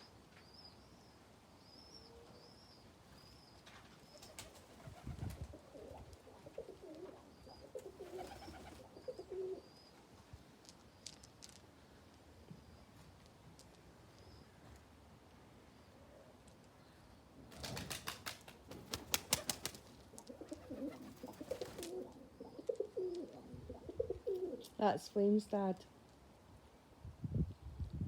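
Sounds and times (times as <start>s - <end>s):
pigeons cooing: 4.1s - 10.0s, 19.1s - 24.7s.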